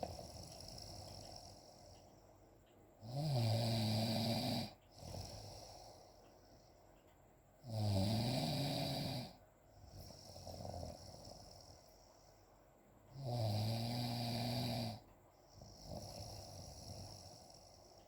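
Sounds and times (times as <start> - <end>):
loud low snoring: 3.0 - 6.0, 7.6 - 11.8, 13.1 - 15.0, 15.6 - 17.9.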